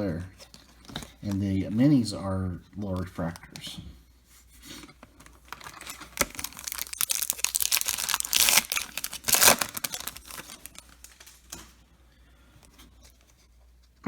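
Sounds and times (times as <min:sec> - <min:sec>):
wrapper tearing and crinkling: 0:05.2 - 0:11.7.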